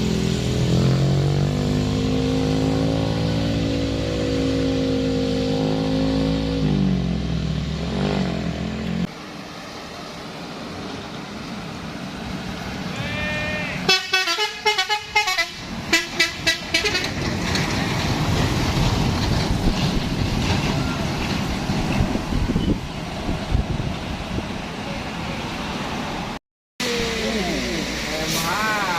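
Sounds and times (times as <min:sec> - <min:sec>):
bus horn musical toots: 0:13.0 - 0:17.2.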